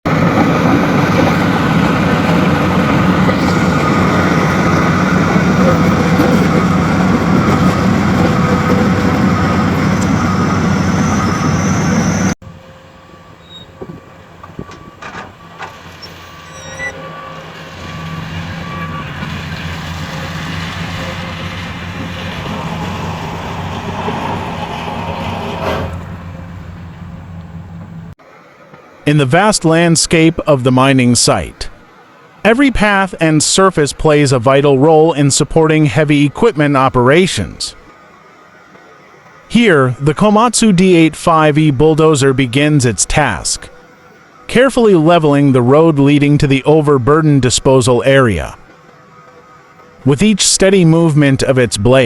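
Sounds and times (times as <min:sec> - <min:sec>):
diesel machinery running: 0:00.1 - 0:52.0
reversing alarm beeping: 0:00.6 - 0:27.8.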